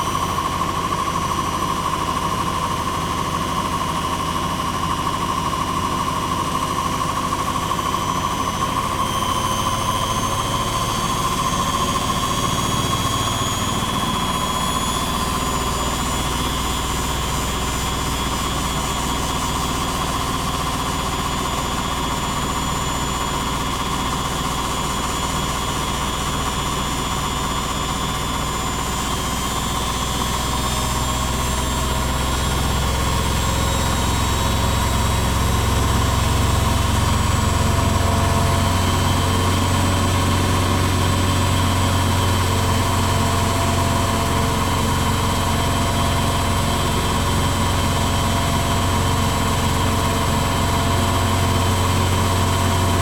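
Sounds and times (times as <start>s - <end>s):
washing machine spinning: 0.0s - 53.0s.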